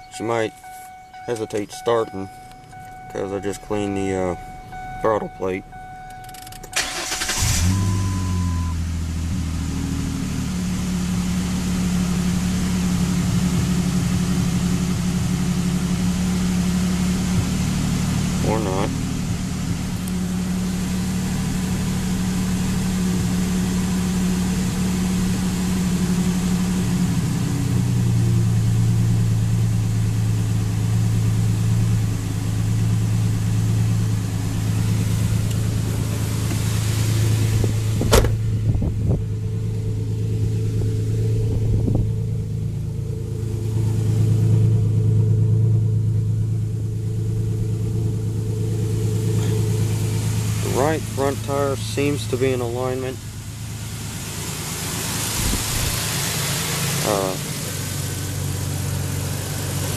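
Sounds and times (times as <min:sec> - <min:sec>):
pickup engine idling: 0:00.0 - 0:59.9
sharp knock: 0:38.0 - 0:38.4.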